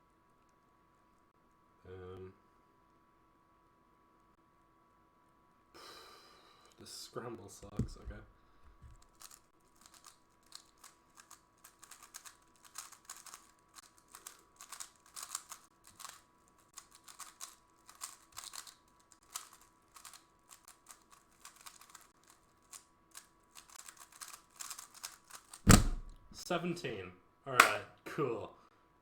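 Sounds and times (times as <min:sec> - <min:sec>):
puzzle cube plastic clicks: 0:08.7 - 0:26.3
loud knock: 0:25.7 - 0:26.2.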